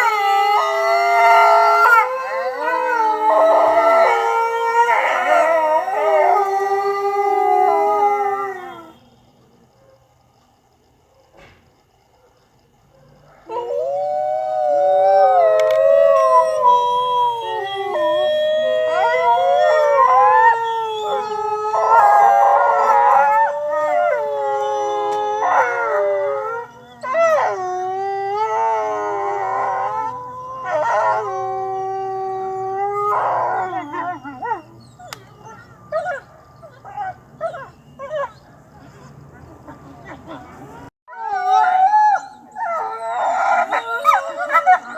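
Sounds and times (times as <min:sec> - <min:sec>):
wolves howling in chorus: 0:00.0 - 0:09.0, 0:13.0 - 0:44.9
wolves yipping: 0:33.0 - 0:44.9.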